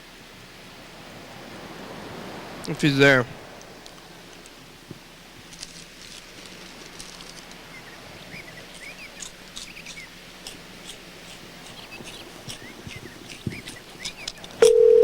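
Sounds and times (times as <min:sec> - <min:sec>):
low background hiss: 0:00.0 - 0:15.0
faint chirps and ticks: 0:07.0 - 0:15.0
telephone dial tone: 0:14.6 - 0:15.0.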